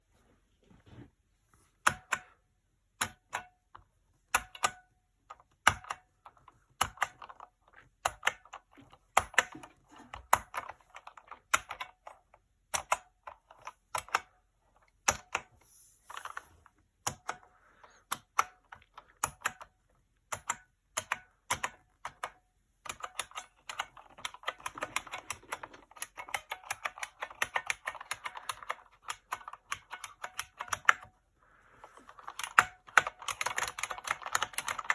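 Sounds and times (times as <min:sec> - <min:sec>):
keyboard keys clicking: 0:18.0 - 0:31.1, 0:31.9 - 0:34.9.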